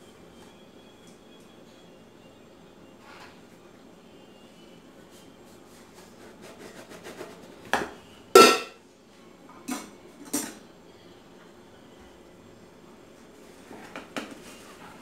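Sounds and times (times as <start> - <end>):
dishes clinking: 8.4 - 8.8.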